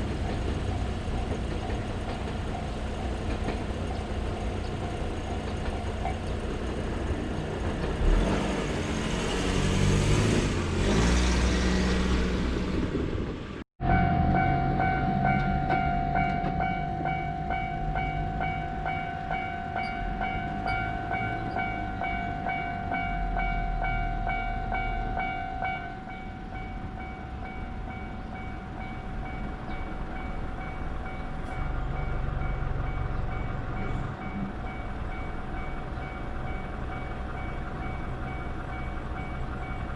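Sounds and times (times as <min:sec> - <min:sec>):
train rushing rumble: 0:00.0 - 0:39.9
level-crossing warning bell: 0:13.8 - 0:39.9.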